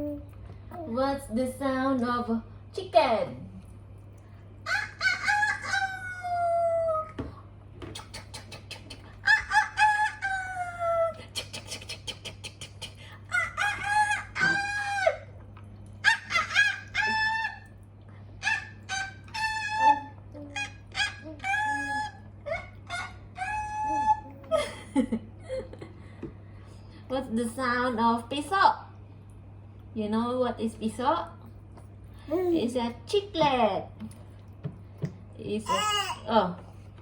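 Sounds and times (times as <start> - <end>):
rooster crowing: 4.7 - 6.4.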